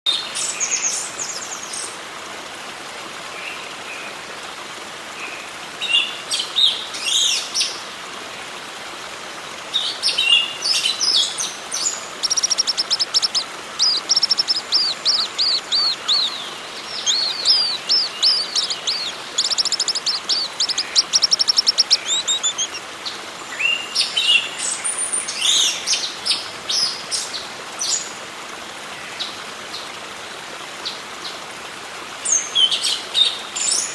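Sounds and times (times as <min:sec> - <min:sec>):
steady background hiss: 0:00.2 - 0:33.9
birds chirping: 0:10.0 - 0:22.8.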